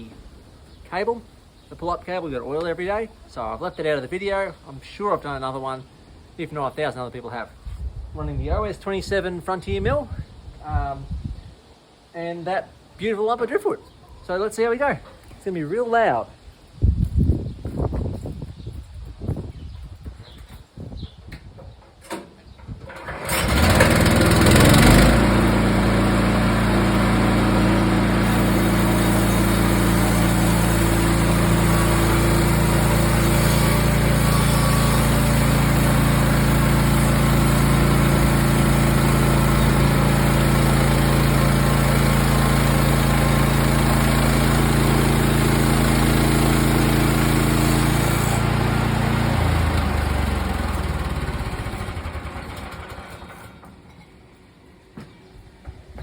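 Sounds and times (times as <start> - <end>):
bandsaw mill engine cutting log: 22.9 - 54.0.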